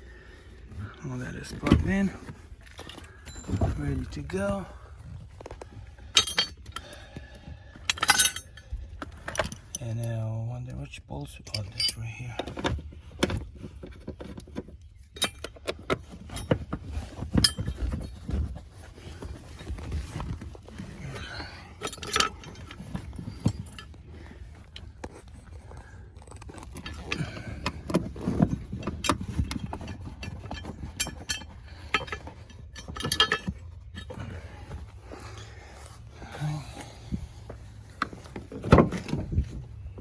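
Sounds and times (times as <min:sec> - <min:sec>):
metal bolts and tools clinking: 0:01.4 - 0:04.6, 0:06.0 - 0:07.0, 0:07.8 - 0:34.6.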